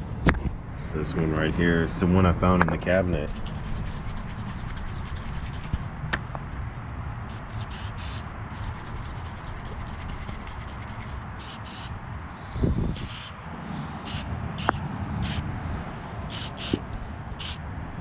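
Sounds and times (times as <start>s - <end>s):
hissy brush strokes: 3.3s - 5.9s, 7.3s - 13.4s, 14.1s - 15.4s, 16.1s - 17.6s.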